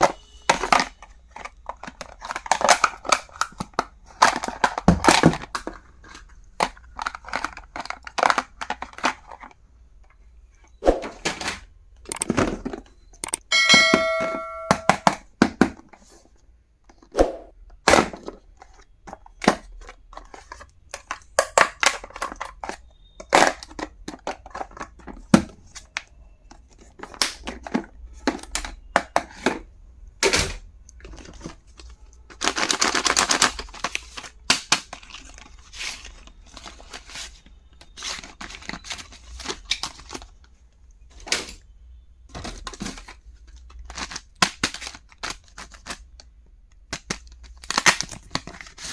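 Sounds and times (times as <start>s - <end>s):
plastic items clicking and tapping: 0.0s - 16.1s, 17.7s - 41.6s, 42.3s - 48.9s
packaging tearing and crinkling: 31.0s - 40.3s, 42.4s - 46.2s, 46.9s - 48.9s.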